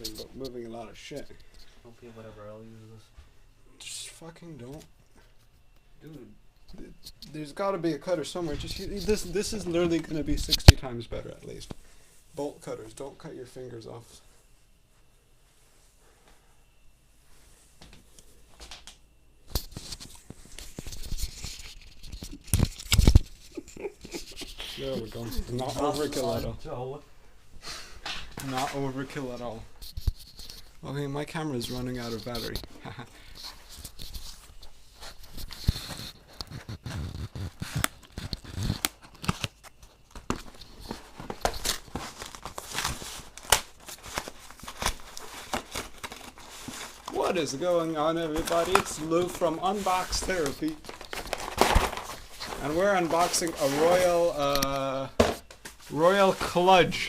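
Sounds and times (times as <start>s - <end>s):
cardboard tearing and crinkling: 35.6s - 54.3s.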